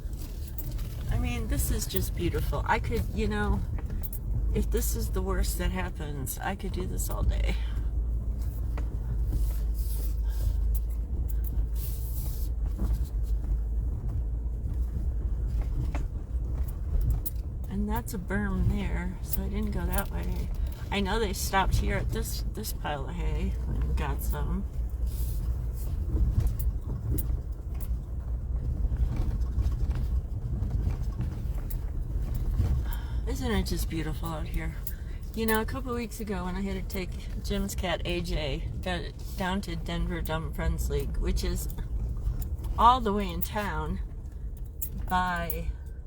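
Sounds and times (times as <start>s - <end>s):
vehicle engine and tyre rumble: 0.0s - 46.0s
light knocks and rattles: 7.5s - 18.1s.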